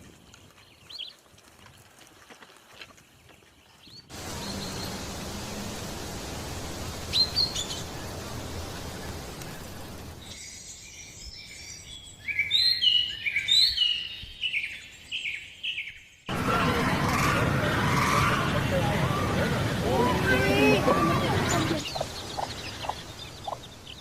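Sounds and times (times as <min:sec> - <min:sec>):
outdoor background noise: 0:00.0 - 0:24.0
bird singing falling chirps: 0:20.1 - 0:24.0.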